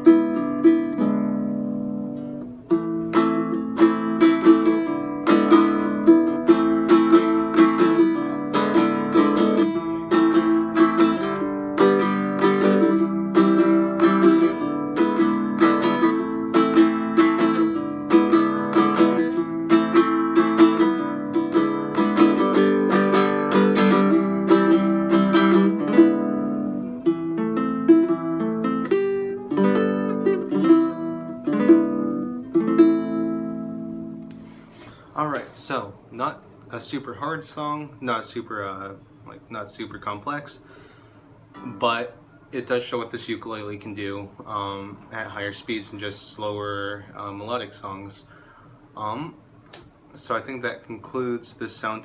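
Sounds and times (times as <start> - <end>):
ukulele fingerpicking: 0.0 - 34.9.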